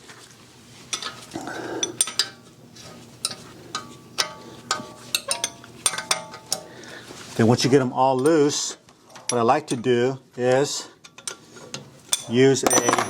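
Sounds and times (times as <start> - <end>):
wrench clinking on metal bolts: 0.9 - 1.2, 1.8 - 2.4, 3.2 - 6.7, 12.1 - 13.0.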